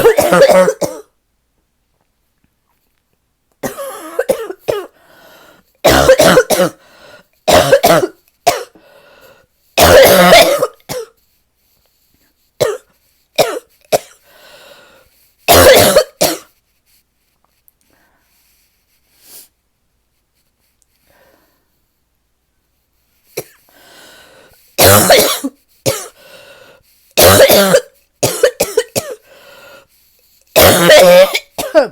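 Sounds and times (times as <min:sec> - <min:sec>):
person deep barking cough: 0:00.0 - 0:01.2, 0:03.6 - 0:05.0, 0:05.8 - 0:06.8, 0:07.5 - 0:08.8, 0:09.8 - 0:11.2, 0:12.6 - 0:14.2, 0:15.5 - 0:16.5, 0:23.4 - 0:23.6, 0:24.8 - 0:26.2, 0:27.2 - 0:29.2, 0:30.6 - 0:31.9.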